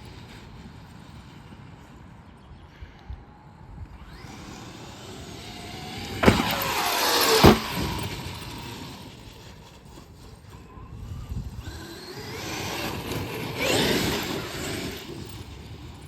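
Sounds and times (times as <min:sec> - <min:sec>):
toy truck electric motor whining: 0:04.0 - 0:16.0.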